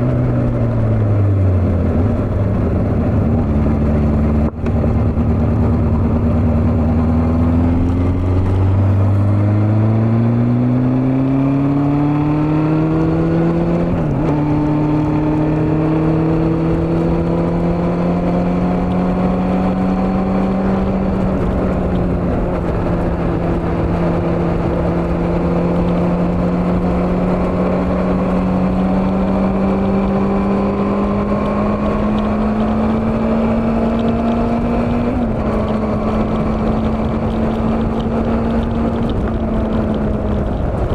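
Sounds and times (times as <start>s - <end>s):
motorcycle engine accelerating: 0.0s - 40.9s
wind noise: 0.0s - 40.9s.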